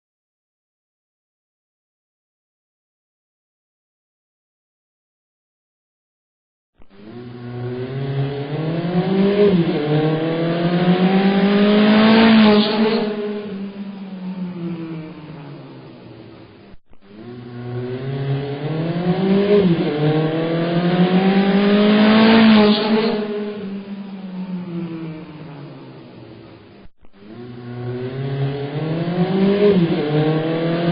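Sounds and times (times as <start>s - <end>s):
racing car engine accelerating: 6.8s - 30.9s
racing car passing by: 7.0s - 30.9s.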